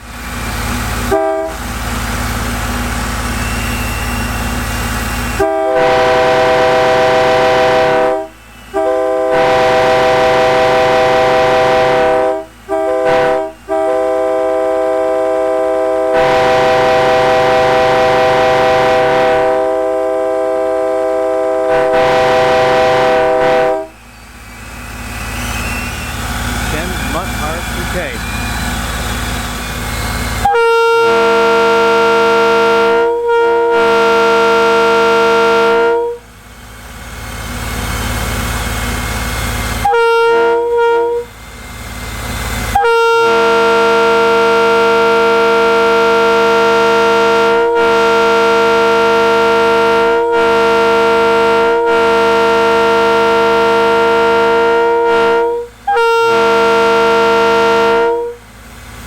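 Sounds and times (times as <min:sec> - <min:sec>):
air horn blasts: 0:01.0 - 0:01.7, 0:05.2 - 0:24.0, 0:30.4 - 0:36.2, 0:39.8 - 0:41.3, 0:42.7 - 0:58.4.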